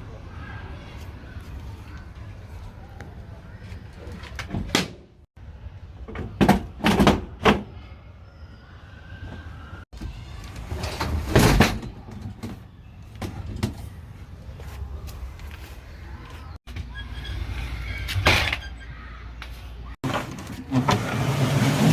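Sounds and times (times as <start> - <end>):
sliding door clatter: 20.0 - 21.9.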